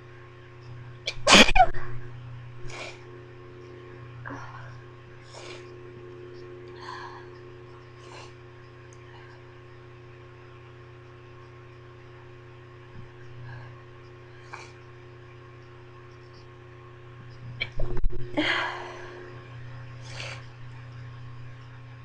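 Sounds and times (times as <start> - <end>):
electrical hum: 0.0 - 22.0
stifled sneeze: 1.1 - 1.7
microphone rumble: 17.2 - 20.0.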